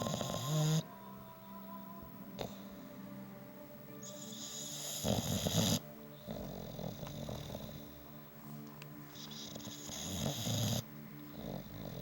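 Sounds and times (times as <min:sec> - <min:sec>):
dog snoring loudly: 0:00.0 - 0:00.9, 0:04.1 - 0:08.0, 0:09.2 - 0:12.0
dog breathing: 0:04.1 - 0:08.2, 0:09.0 - 0:12.0.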